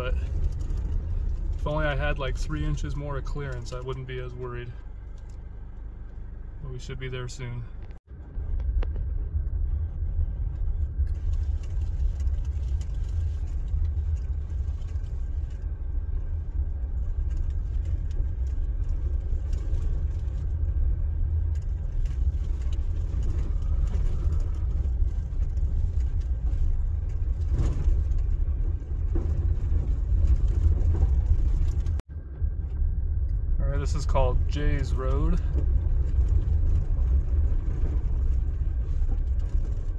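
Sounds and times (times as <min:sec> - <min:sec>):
vehicle driving on dirt road: 0:00.0 - 0:39.9
vehicle knocks and jolts: 0:07.8 - 0:33.2, 0:33.8 - 0:39.9.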